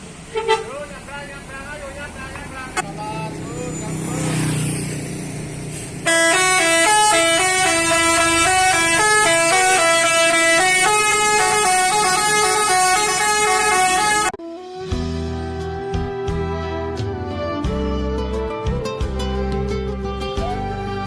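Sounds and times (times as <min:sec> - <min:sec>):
multi-tone bus air horn melody: 0:00.2 - 0:00.8, 0:06.0 - 0:14.8.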